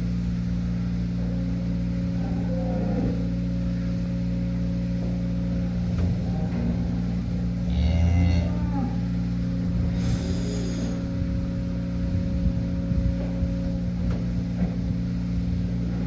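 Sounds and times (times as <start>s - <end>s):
low mechanical hum: 0.0s - 16.0s
cow mooing: 6.2s - 9.2s, 10.0s - 11.0s.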